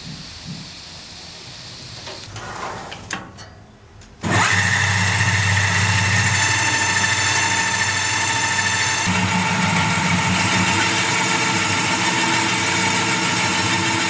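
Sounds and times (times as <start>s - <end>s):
machine motor running: 4.2s - 14.0s.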